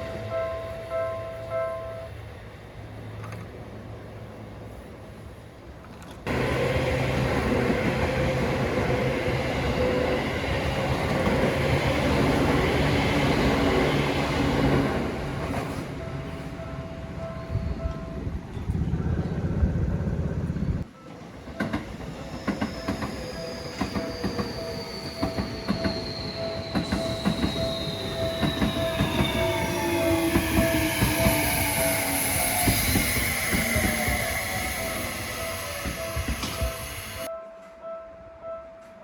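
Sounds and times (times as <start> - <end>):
train wheels clicking over rail joints: 21.5 - 37.3
train motor whine: 21.8 - 37.3
level crossing alarm dinging: 22.6 - 37.3.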